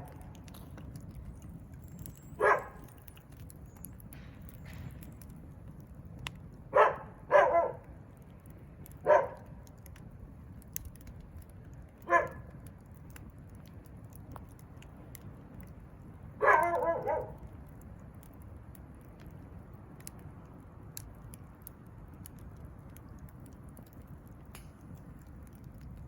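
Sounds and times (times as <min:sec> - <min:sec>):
wood fire crackling: 0:00.0 - 0:26.0
dog barking: 0:02.4 - 0:02.9, 0:06.7 - 0:07.9, 0:09.0 - 0:09.5, 0:12.1 - 0:12.4, 0:16.4 - 0:17.4.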